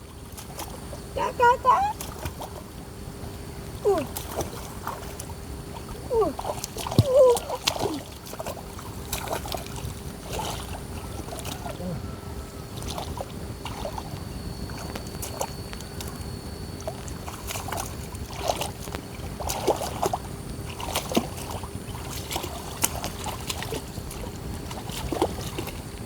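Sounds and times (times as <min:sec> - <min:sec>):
shallow water splashing: 0:00.0 - 0:26.0
water plops and drips: 0:04.1 - 0:11.7.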